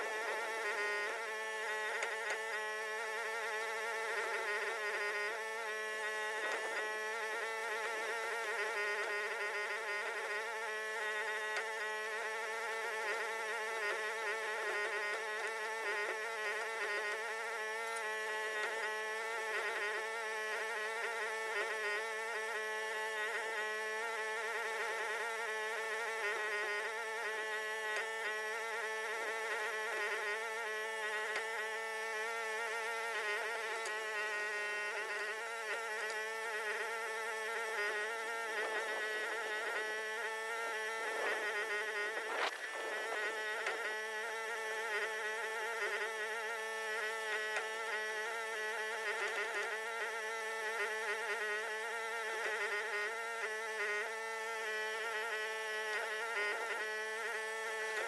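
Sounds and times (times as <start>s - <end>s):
excavator engine droning: 24.6s - 58.0s.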